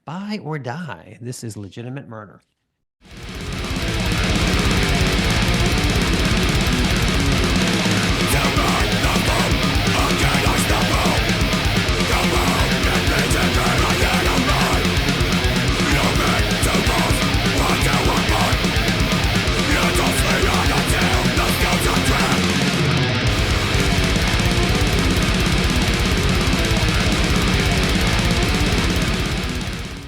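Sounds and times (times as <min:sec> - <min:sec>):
distorted guitar riffing: 0:03.1 - 0:30.0
fast drumming: 0:03.1 - 0:30.0.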